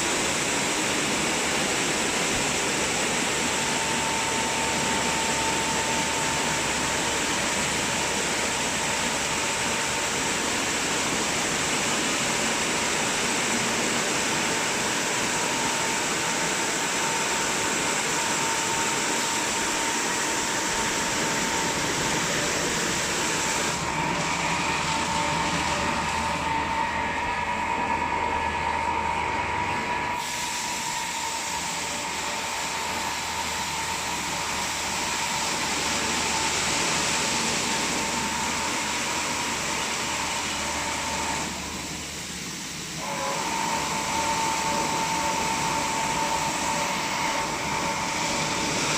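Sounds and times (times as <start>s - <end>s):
car wash rushing noise: 0.0s - 48.9s
car wash whine: 0.0s - 48.9s.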